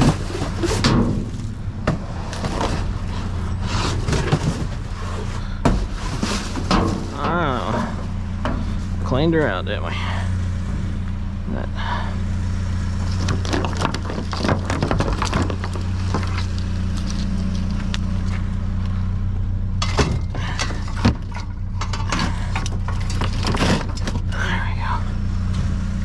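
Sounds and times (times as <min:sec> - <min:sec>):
scrap clattering and rustling: 0:00.0 - 0:09.6, 0:13.0 - 0:19.0, 0:19.8 - 0:24.4
truck engine idling: 0:00.0 - 0:26.0.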